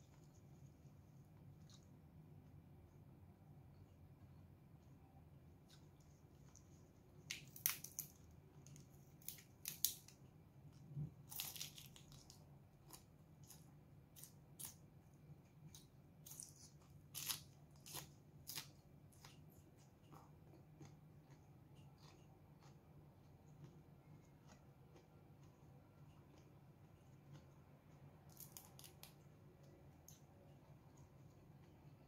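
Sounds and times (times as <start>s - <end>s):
leafy greens crunching while chewed: 5.7s - 14.8s, 15.7s - 27.6s, 28.2s - 29.2s.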